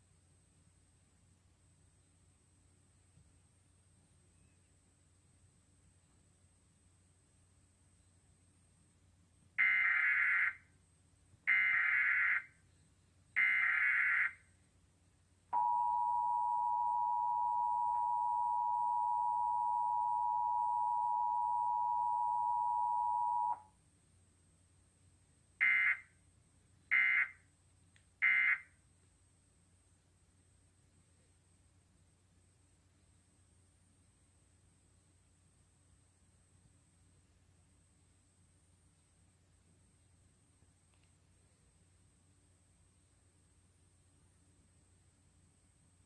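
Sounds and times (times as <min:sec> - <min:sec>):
two-tone attention signal: 0:15.6 - 0:23.6
short data bursts: 0:25.6 - 0:26.1, 0:26.9 - 0:27.4, 0:28.2 - 0:28.7.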